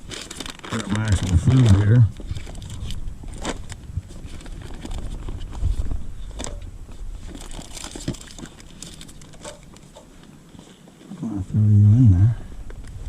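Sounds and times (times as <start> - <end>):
steady low rumble: 0.0 - 9.1
rustling: 0.0 - 11.2.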